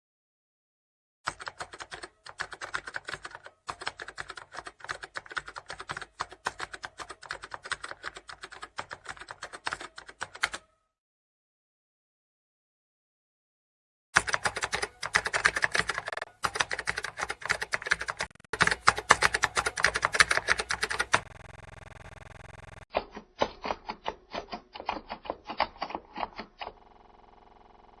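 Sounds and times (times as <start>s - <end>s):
rapid typing key clicks: 1.3s - 10.6s, 14.2s - 22.9s.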